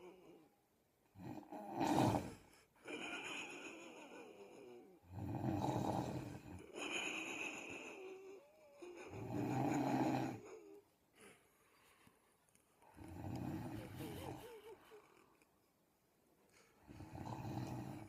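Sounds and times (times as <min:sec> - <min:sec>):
rattling snores: 0:01.2 - 0:02.4, 0:05.1 - 0:06.7, 0:09.1 - 0:10.4, 0:13.0 - 0:14.6, 0:16.9 - 0:18.0.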